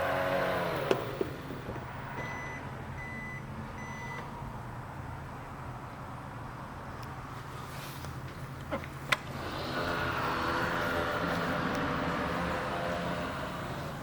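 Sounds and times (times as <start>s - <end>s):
car engine revving and idling: 0.0s - 2.4s, 9.2s - 14.0s
short electronic car beeps: 2.2s - 4.3s.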